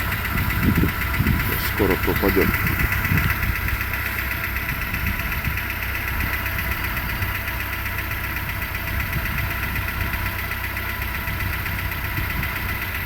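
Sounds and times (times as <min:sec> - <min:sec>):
car engine idling: 0:00.0 - 0:13.0
light ticking chatter: 0:01.2 - 0:03.4.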